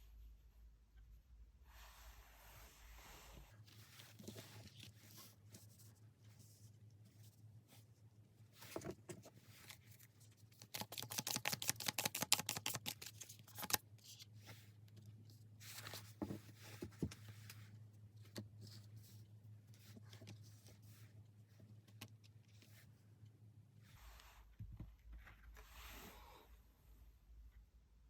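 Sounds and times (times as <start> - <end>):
cards being shuffled: 9.6 - 13.9.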